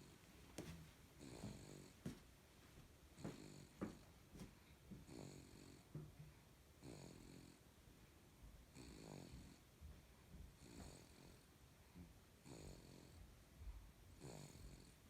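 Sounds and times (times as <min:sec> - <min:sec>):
baby snoring: 0:01.2 - 0:02.0, 0:05.1 - 0:05.8, 0:06.8 - 0:07.6, 0:08.8 - 0:09.6, 0:10.6 - 0:11.4, 0:12.4 - 0:13.2, 0:14.2 - 0:15.0.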